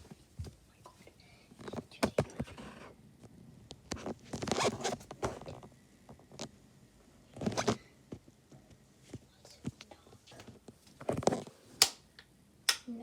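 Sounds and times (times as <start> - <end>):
rustling and scraping: 1.6 - 6.6, 7.2 - 11.8.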